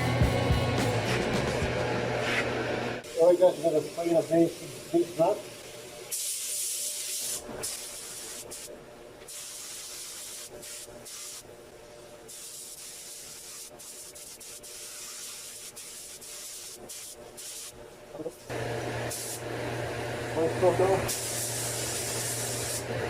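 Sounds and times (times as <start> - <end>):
paint spray gun hissing: 12.3 - 17.8, 19.1 - 19.5, 20.7 - 22.8.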